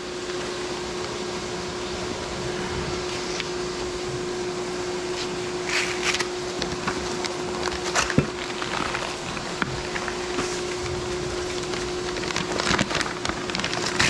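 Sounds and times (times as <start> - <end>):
steady machine hum: 0.0 - 14.0
cardboard packaging crackling: 5.1 - 14.0.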